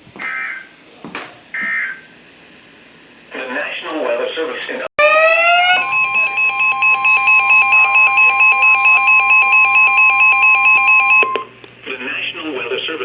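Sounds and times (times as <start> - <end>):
steady alarm tone: 5.0 - 11.5
pulsing beep: 5.3 - 11.5.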